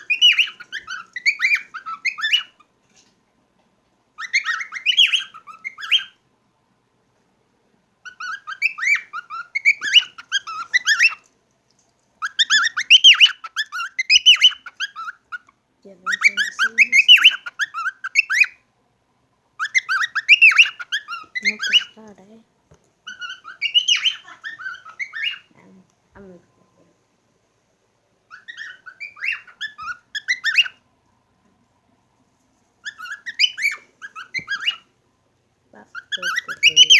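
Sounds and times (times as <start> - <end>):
cockatiel chirping and whistling: 0.0 - 2.6, 4.2 - 6.2, 8.0 - 11.2, 12.2 - 15.5, 16.1 - 18.6, 19.6 - 22.0, 23.0 - 25.5, 28.3 - 30.8, 32.8 - 34.9, 35.9 - 36.9.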